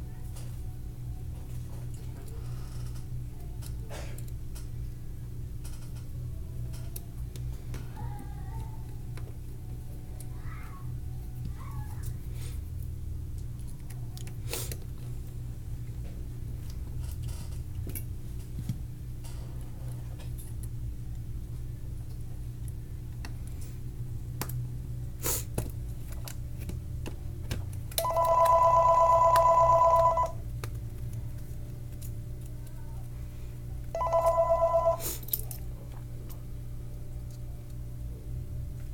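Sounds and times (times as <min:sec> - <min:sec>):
telephone ringing electronically: 0:28.0 - 0:30.4, 0:34.0 - 0:35.2.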